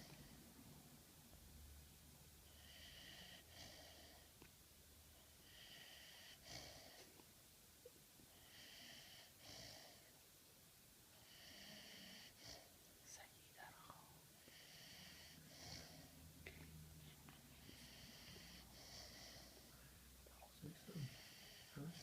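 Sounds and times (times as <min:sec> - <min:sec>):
dog snoring faintly: 0:05.2 - 0:07.2, 0:11.2 - 0:12.8, 0:13.8 - 0:16.2, 0:17.0 - 0:22.0.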